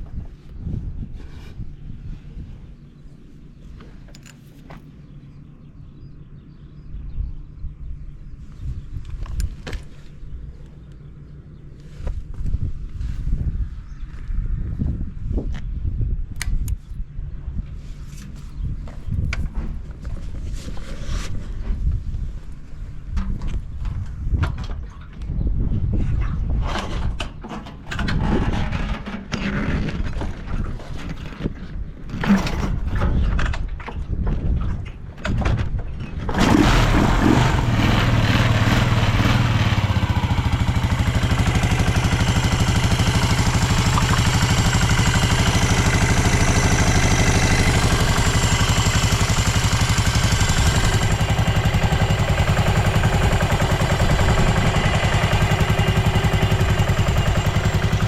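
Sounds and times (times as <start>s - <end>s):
motorcycle engine kick-starting: 3.8s - 5.2s, 26.6s - 30.4s, 35.2s - 58.0s
motorcycle engine idling: 36.4s - 58.0s.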